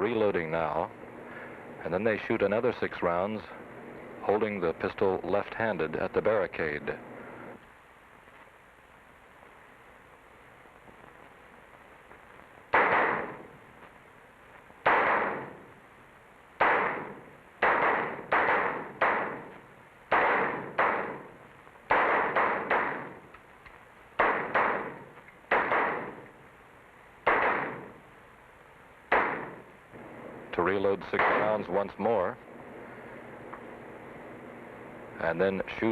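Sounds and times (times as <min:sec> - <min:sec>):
pistol shots echoing indoors: 0:12.7 - 0:13.6, 0:14.8 - 0:15.7, 0:16.6 - 0:23.3, 0:24.2 - 0:26.3, 0:27.2 - 0:28.0, 0:29.1 - 0:30.1, 0:31.1 - 0:31.8.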